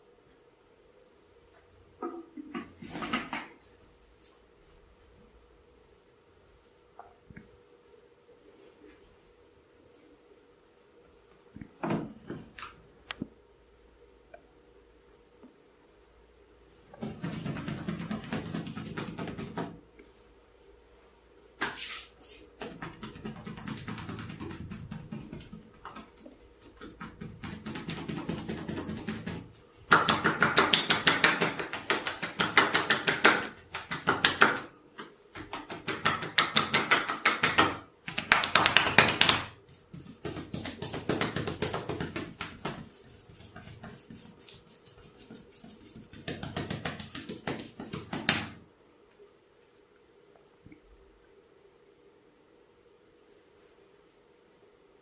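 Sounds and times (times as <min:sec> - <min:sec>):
rapid massage taps: 0:16.9 - 0:19.9, 0:22.6 - 0:48.6.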